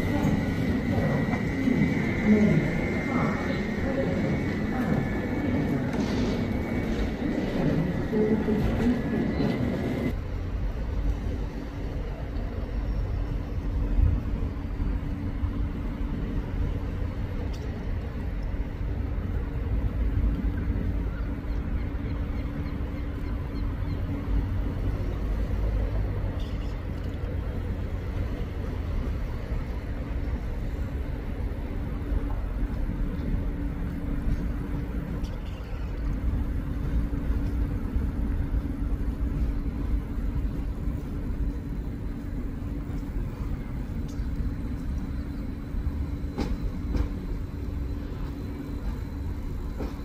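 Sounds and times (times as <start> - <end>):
steady high-pitched tone: 0.0 - 10.2
train rumble: 0.0 - 50.0.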